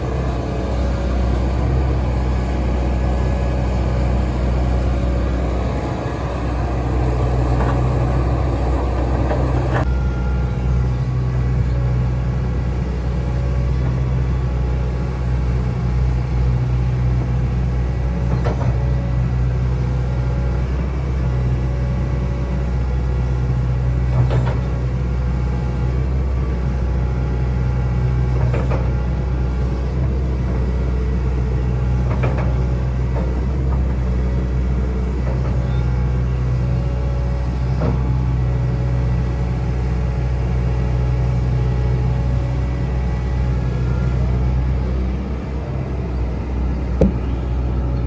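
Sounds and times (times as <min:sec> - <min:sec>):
excavator diesel engine running: 0:00.0 - 0:48.0
sharp knocks: 0:47.0 - 0:47.5.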